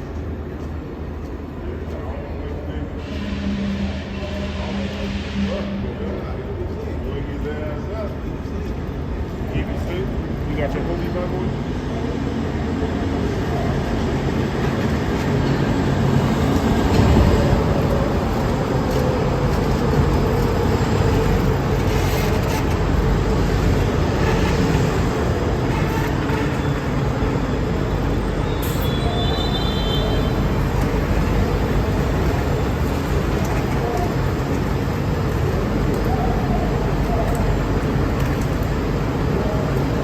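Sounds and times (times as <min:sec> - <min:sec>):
subway train rumbling: 0:00.0 - 0:40.0
short high squeal: 0:28.5 - 0:30.2.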